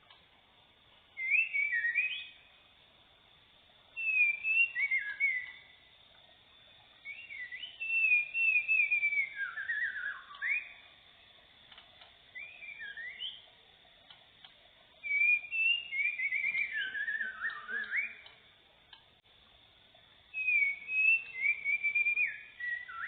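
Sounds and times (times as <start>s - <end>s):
bird singing whistled phrases: 1.2s - 2.4s, 4.0s - 5.7s, 7.0s - 10.8s, 12.3s - 13.5s, 15.0s - 18.4s, 20.3s - 23.0s.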